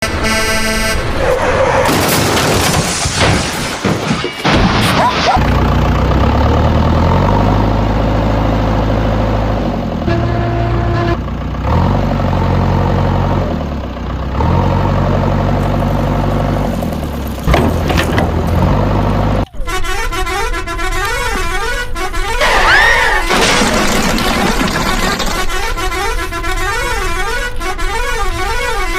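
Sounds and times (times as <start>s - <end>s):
vehicle horn honking: 0.0s - 1.2s, 10.0s - 11.3s, 19.5s - 23.3s, 25.1s - 28.9s.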